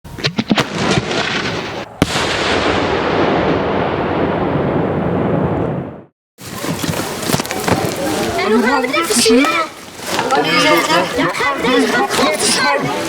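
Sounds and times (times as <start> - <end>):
fireworks banging: 0.1 - 8.4.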